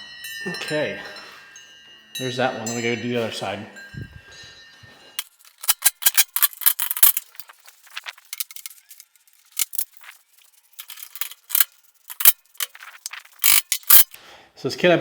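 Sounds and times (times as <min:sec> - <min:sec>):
sharp metallic clicks and clinks: 0:05.2 - 0:14.2.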